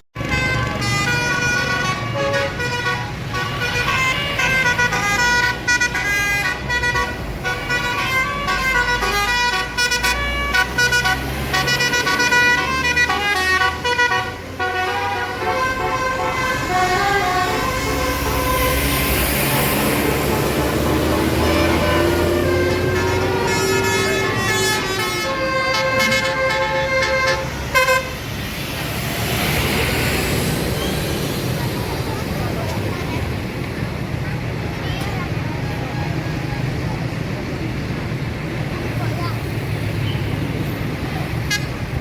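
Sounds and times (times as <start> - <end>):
bus engine rumble: 0.0 - 42.0
bus horn playing a melody: 0.1 - 28.2, 41.5 - 42.0.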